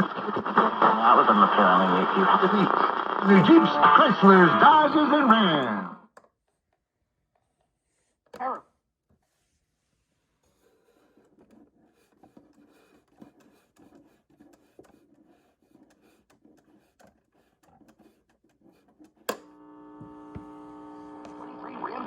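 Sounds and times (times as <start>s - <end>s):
radio crackling and clicks: 0.0s - 6.0s, 19.2s - 22.0s
steady buzzing tone: 19.4s - 22.0s.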